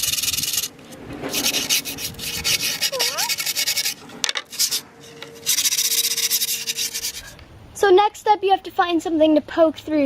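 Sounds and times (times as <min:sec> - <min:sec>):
grip tape rasping on skateboard: 0:00.0 - 0:07.4.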